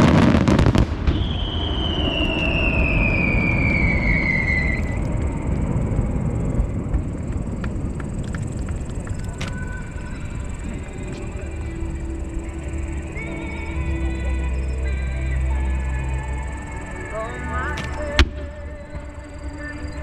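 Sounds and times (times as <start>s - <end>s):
fireworks crackling pops: 0.0s - 5.7s, 6.8s - 11.4s, 17.7s - 19.2s
whistling firework: 0.0s - 20.0s.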